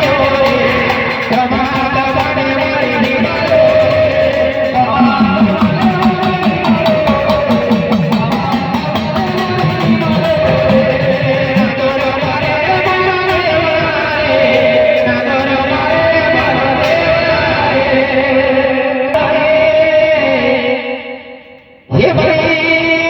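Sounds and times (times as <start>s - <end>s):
steady fast beat: 0.0s - 18.2s.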